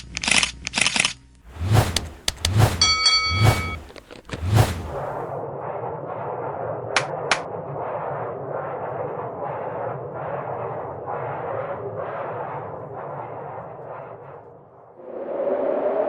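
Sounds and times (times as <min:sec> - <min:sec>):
steady mid-pitched tone: 0:01.5 - 0:05.2
pulsing noisy rumble: 0:01.5 - 0:05.3.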